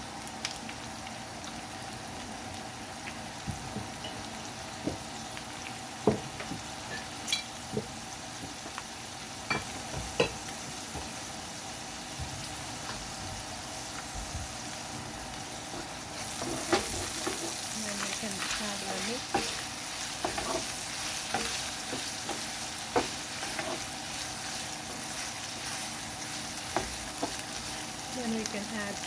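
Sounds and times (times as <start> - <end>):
onions sizzling in oil: 0.0 - 29.0.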